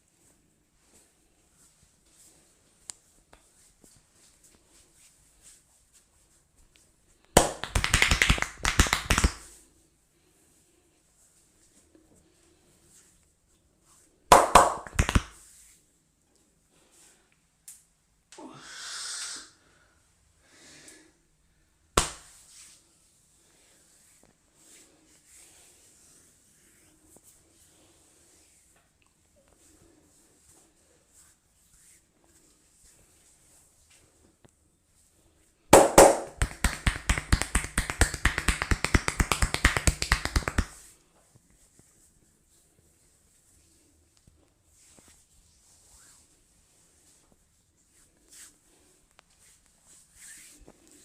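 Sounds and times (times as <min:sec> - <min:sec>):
sharp slap: 0:07.4 - 0:09.4, 0:14.3 - 0:15.3, 0:22.0 - 0:22.3, 0:35.8 - 0:40.7
hands tapping on head: 0:07.4 - 0:09.5, 0:14.3 - 0:15.4, 0:22.0 - 0:22.2, 0:35.8 - 0:40.8.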